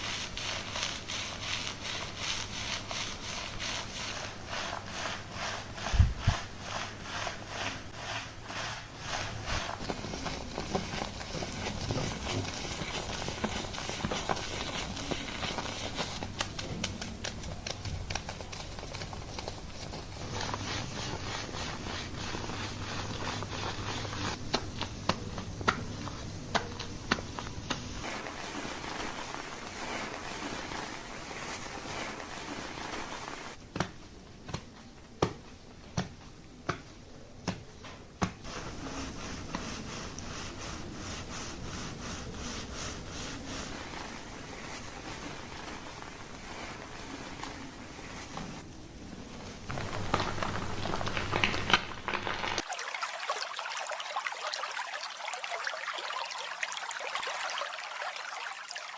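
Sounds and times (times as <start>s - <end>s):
hands scrubbing a shampooed scalp: 0.0s - 33.6s, 38.4s - 48.6s, 49.5s - 52.7s.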